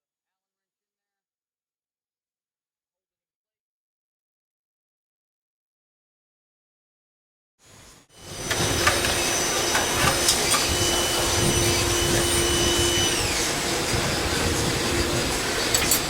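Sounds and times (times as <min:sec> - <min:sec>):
motor whooshing: 0:08.2 - 0:16.0.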